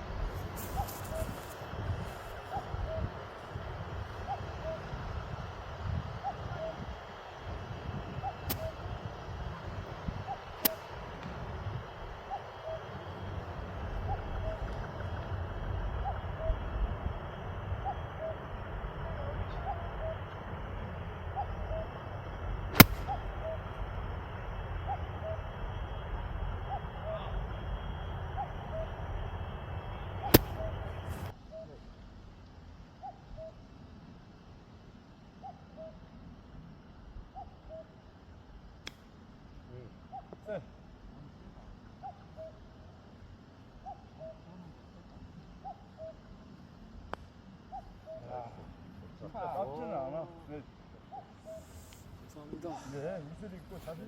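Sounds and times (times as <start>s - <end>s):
bird two-note hooting call: 4.3s - 4.9s, 23.1s - 23.8s, 24.7s - 31.7s
golf club striking ball: 22.7s - 23.4s, 30.3s - 31.3s.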